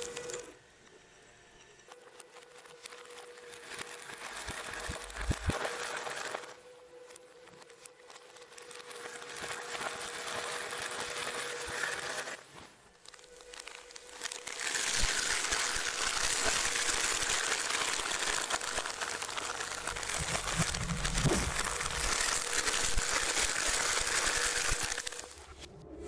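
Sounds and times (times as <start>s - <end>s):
shredder crackling bubble wrap: 0.0s - 0.5s, 1.9s - 25.7s
faint motor hum: 0.0s - 25.9s
low thumps: 20.0s - 22.3s.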